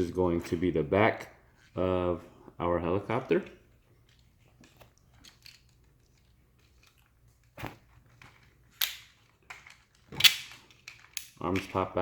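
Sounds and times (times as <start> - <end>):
plastic toy handling: 4.0 - 12.0
plastic toy parts snapping: 8.8 - 11.7.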